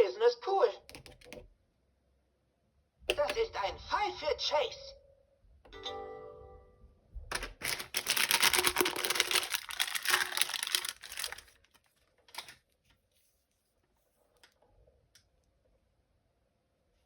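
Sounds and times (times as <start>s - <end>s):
packaging crinkling and tearing: 7.3s - 12.6s.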